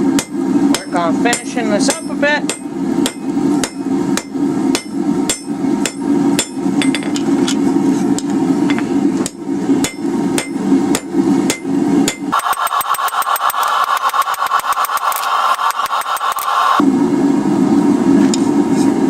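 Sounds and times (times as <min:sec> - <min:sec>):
hammer striking steel on anvil: 0:00.1 - 0:07.1, 0:09.2 - 0:16.8
low hum: 0:12.3 - 0:17.2.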